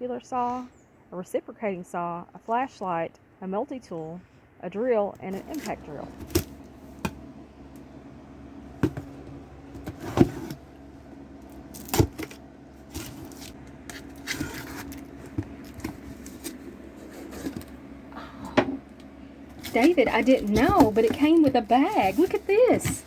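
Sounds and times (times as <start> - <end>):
faint steady hum: 0.0 - 23.0
packaging rustling: 11.4 - 17.8, 19.5 - 23.0.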